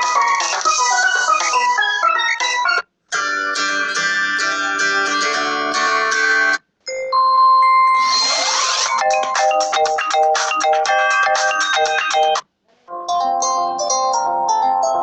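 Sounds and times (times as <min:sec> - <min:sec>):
plucked-string ringtone melody: 0:03.2 - 0:15.0
ringtone chimes and rising sweep: 0:06.9 - 0:12.4.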